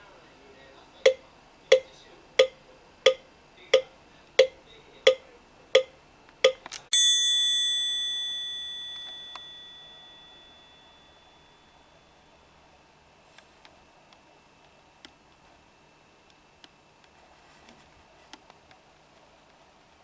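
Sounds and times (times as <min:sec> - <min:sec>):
bell strike ringing: 0:06.9 - 0:11.7.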